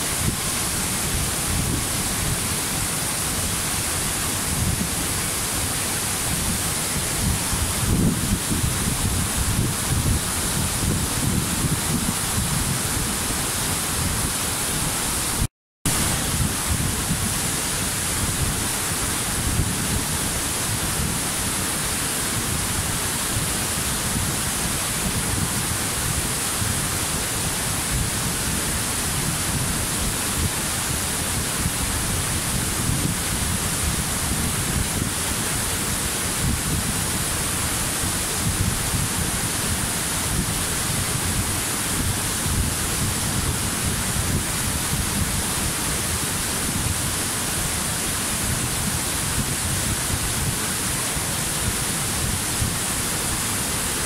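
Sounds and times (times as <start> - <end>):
waterfall rushing: 0.0 - 54.0.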